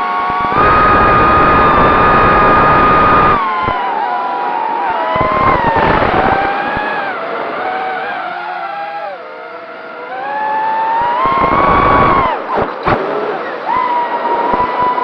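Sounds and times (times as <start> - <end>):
quadcopter motors whining: 0.0 - 15.0.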